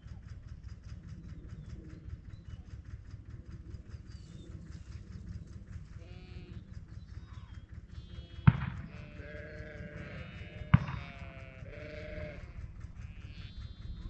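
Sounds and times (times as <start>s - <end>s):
steady low rumble: 0.0s - 14.0s
sheep bleating: 6.0s - 6.6s, 8.0s - 13.6s.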